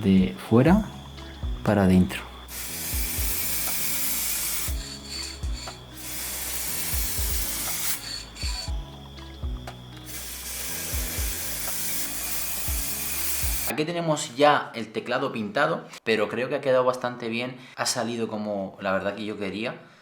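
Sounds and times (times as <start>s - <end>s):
music with low beat: 0.0s - 13.7s
spray paint hissing: 2.2s - 13.7s.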